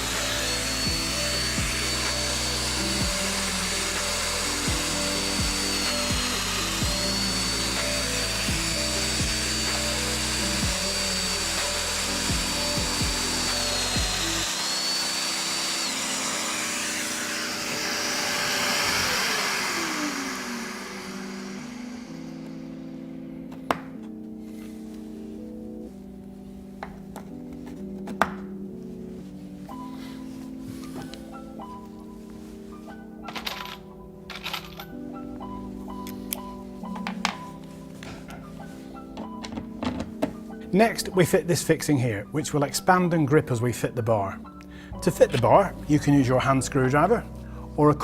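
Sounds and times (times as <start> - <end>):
tool winding down: 0.0 - 22.8, 33.3 - 35.0
power joiner whining: 0.0 - 24.2.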